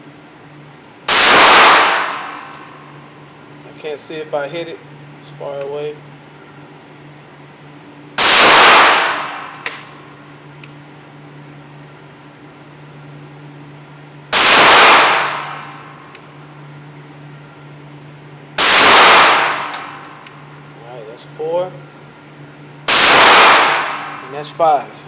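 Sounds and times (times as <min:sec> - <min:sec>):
ventilation hum: 0:00.0 - 0:25.0
pistol shots echoing: 0:01.1 - 0:02.4, 0:08.2 - 0:09.5, 0:14.4 - 0:15.7, 0:18.6 - 0:20.0, 0:22.9 - 0:24.3.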